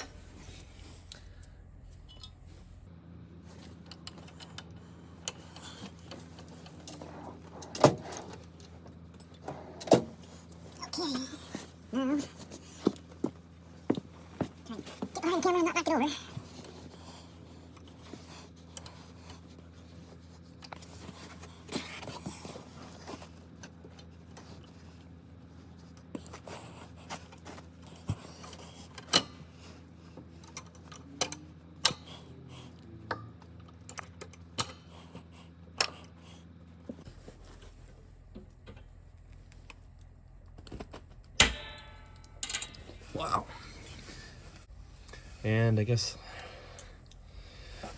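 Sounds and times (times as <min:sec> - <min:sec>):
sharp metal clanks: 0:41.4 - 0:43.0
metal tools clicking and clinking: 0:41.4 - 0:43.1.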